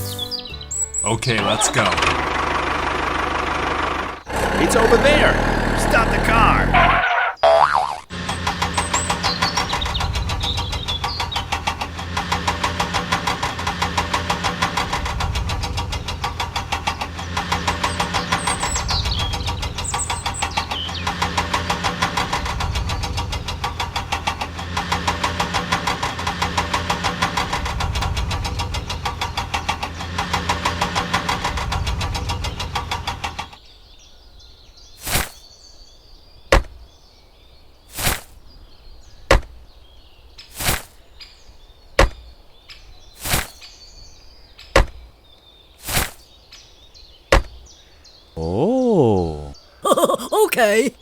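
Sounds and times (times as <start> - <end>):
diesel engine chugging: 1.3 - 7.0, 8.1 - 33.5.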